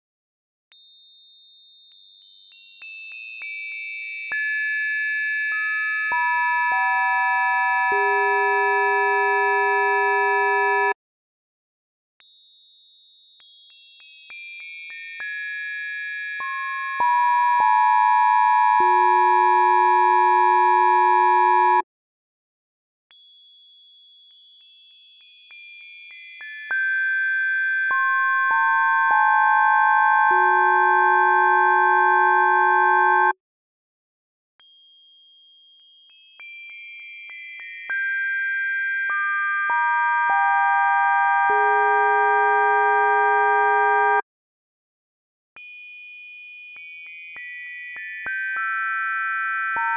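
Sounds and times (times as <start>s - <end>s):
sine tone bell chord: 6.2s - 11.0s, 17.0s - 21.8s, 28.0s - 33.4s.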